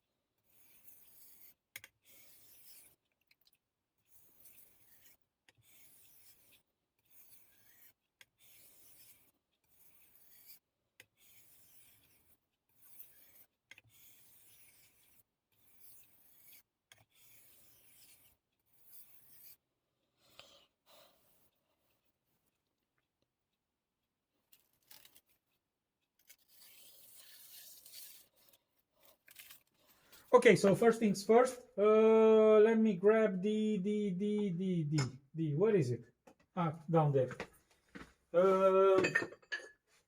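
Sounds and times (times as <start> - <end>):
blade scraping on whetstone: 0.4 - 3.0, 4.0 - 19.6, 26.2 - 30.3.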